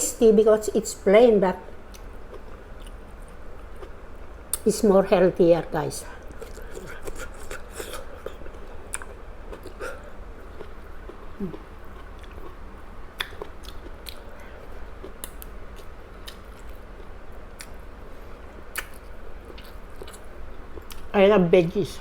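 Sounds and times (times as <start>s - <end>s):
low steady hum: 0.0s - 22.0s
chewing food: 6.1s - 18.0s, 18.7s - 21.1s.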